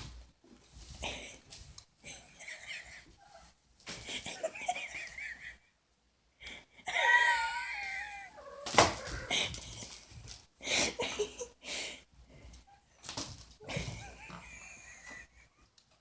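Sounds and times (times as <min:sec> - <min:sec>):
animal warbling call: 0:07.8 - 0:09.5.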